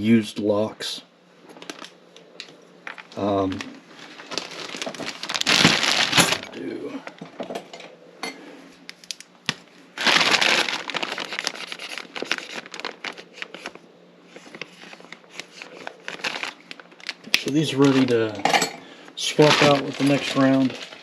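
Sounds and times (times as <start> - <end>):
loud crinkling rustle: 2.9 - 7.2, 10.0 - 18.2, 19.2 - 21.0.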